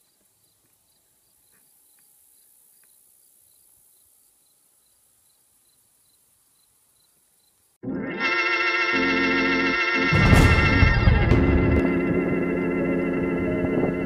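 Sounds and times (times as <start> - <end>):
insect chirping: 0.0 - 7.8
low steady hiss: 0.0 - 7.8.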